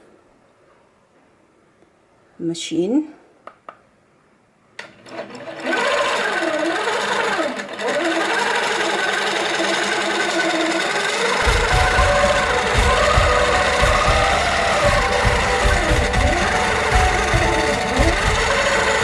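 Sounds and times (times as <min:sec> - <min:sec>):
sewing machine running: 0:05.1 - 0:19.0.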